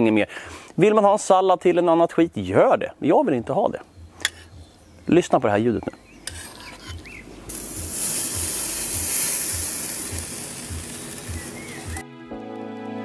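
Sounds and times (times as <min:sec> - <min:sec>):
steak sizzling on a grill: 0:07.5 - 0:12.0.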